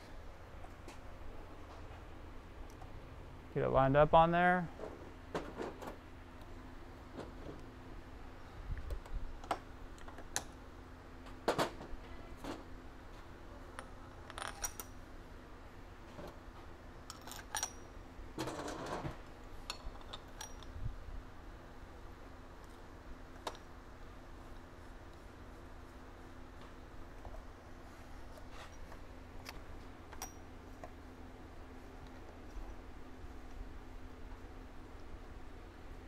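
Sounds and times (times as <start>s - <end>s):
low steady hum: 0.0s - 36.0s
metallic clicks and clinks: 14.2s - 15.0s, 17.0s - 18.0s, 19.6s - 20.8s.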